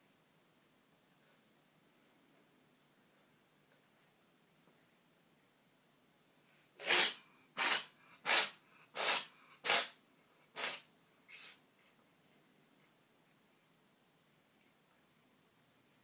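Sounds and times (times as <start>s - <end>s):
cat sneezing: 6.8s - 11.6s.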